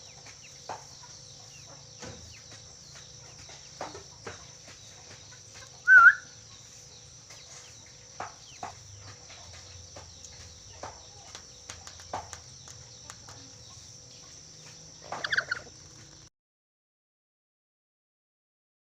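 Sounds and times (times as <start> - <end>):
sharp bird calls: 4.3 - 6.8, 15.0 - 15.8
parrot wavering whistle: 5.8 - 6.3.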